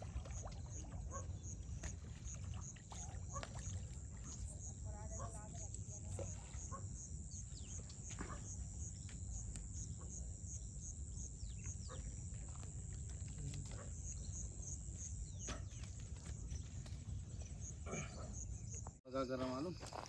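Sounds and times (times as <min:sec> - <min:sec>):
insects trilling: 0:00.0 - 0:18.9
faint chirps and clicks: 0:05.6 - 0:10.2.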